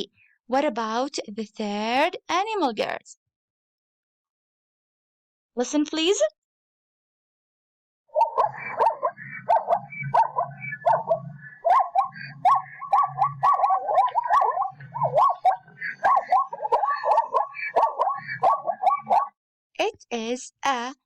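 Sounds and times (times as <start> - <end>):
zebra barking calls: 8.2 - 19.4.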